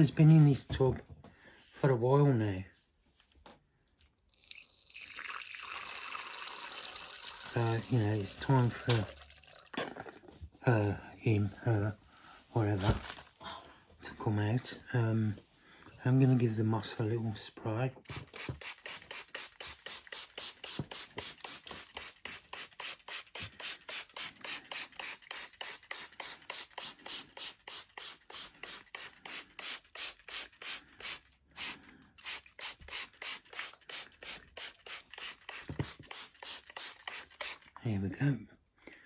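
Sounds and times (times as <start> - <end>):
spray bottle squirting: 18.0 - 37.8.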